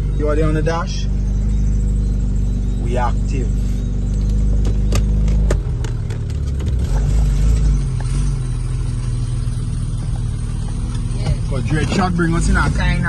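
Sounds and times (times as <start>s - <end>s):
off-road vehicle engine: 0.0s - 13.0s
knocks and rattles: 4.0s - 8.2s.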